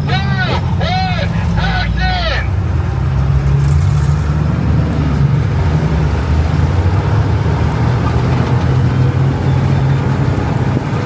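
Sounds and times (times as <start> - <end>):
truck engine running: 0.0 - 3.1
road and wind noise: 0.0 - 11.0.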